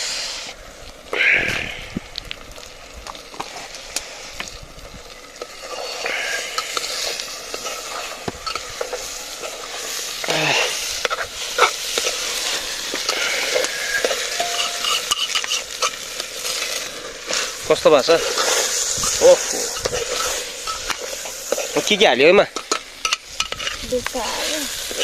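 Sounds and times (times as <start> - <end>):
food sizzling in hot oil: 0.0 - 25.0
spoon scraping metal pan: 13.8 - 16.0.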